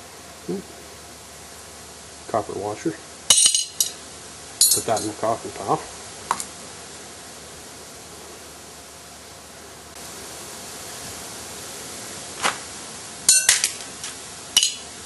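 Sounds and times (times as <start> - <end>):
faint steady hiss: 0.0 - 15.0
sharp metallic clinks: 3.3 - 4.0, 4.6 - 5.2, 14.6 - 14.9.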